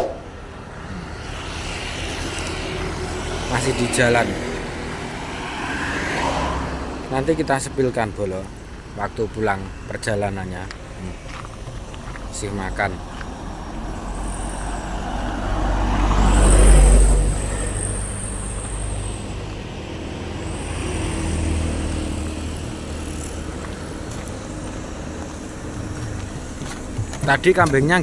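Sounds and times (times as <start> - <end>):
road traffic passing: 0.0 - 28.0
vehicle passing close: 0.0 - 28.0.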